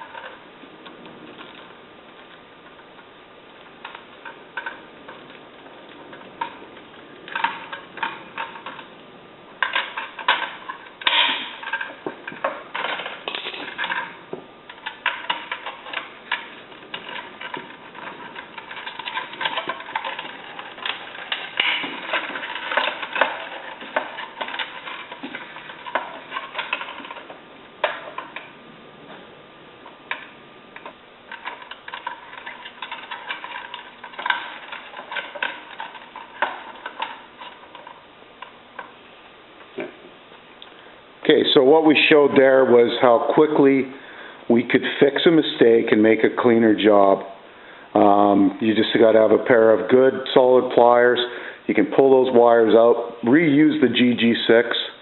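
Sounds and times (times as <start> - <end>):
wires clicking against metal box: 0.0 - 39.0.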